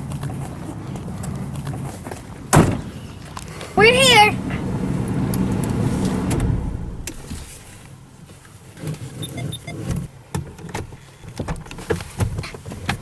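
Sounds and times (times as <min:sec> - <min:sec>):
car engine rumble: 0:00.0 - 0:08.9.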